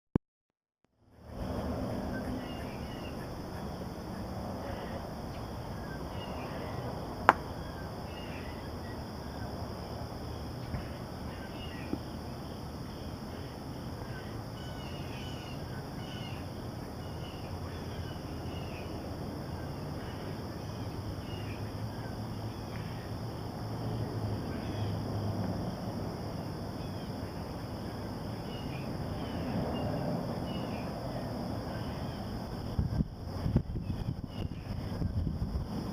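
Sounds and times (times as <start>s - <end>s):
faint bird chirps: 2.0s - 3.7s, 12.9s - 19.0s.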